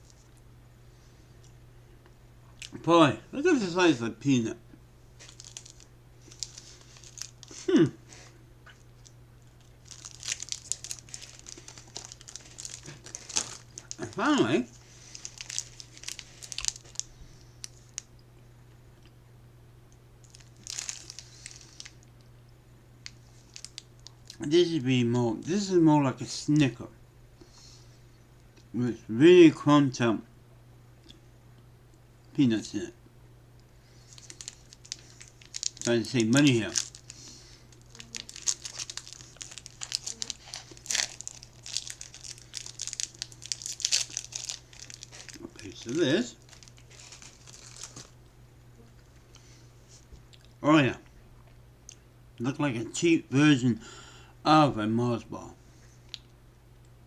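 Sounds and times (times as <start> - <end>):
faint steady hum: 0.0 - 57.0
plastic wrapper crinkling: 5.2 - 7.6, 8.7 - 18.1, 20.2 - 22.1, 23.0 - 24.4, 33.9 - 48.2.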